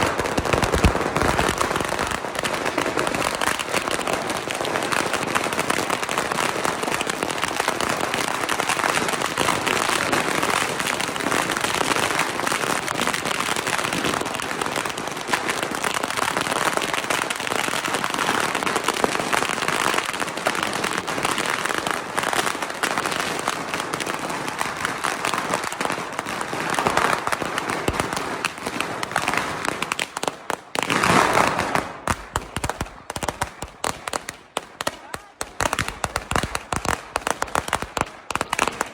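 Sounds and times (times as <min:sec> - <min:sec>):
firecrackers popping: 0:00.0 - 0:38.9.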